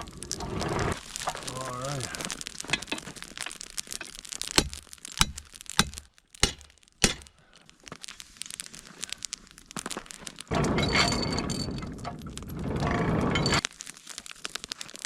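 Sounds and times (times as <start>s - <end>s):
charcoal fire crackling: 0.0s - 15.0s
loud sharp cracks: 2.1s - 7.8s.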